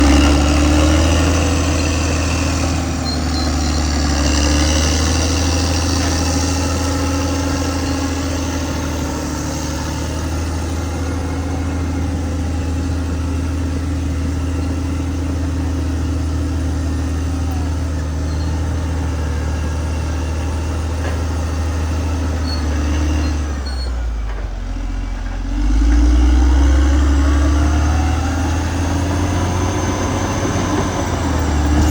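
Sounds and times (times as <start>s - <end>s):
bulldozer diesel engine running: 0.0s - 31.9s.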